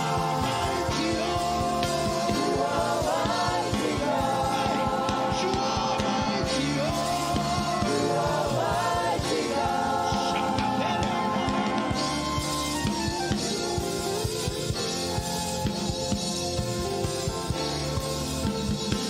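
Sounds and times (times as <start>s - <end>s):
person singing: 0.0s - 13.6s
drum kit beat: 0.0s - 19.0s
worship band playing: 0.0s - 19.0s.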